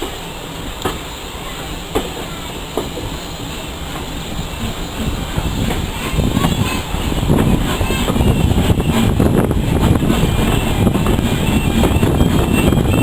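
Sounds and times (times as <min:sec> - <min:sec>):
train rumbling on rails: 0:00.0 - 0:13.0
sharp rail clicks: 0:00.6 - 0:01.1.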